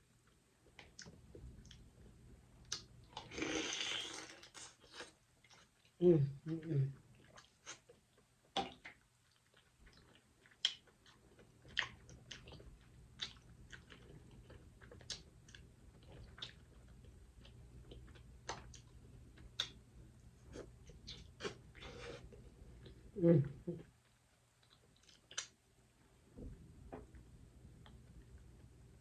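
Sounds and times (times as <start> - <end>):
faint low hum: 0.0 - 29.0
chewing mouth clicks and smacks: 7.2 - 19.8, 24.6 - 25.6.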